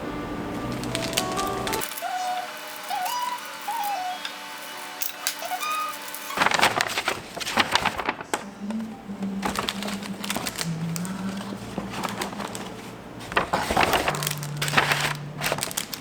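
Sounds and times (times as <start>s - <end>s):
background music: 0.0s - 3.2s.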